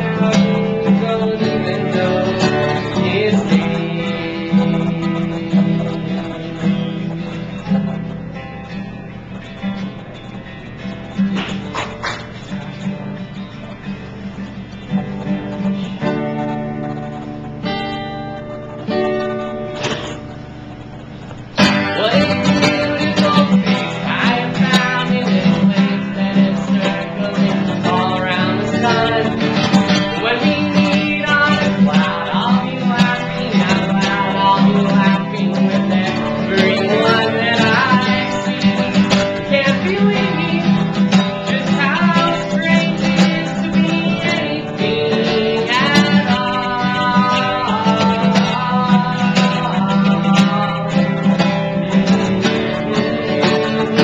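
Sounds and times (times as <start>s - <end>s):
person singing: 0.0s - 8.5s, 21.6s - 54.0s
strummed acoustic guitar: 0.0s - 54.0s.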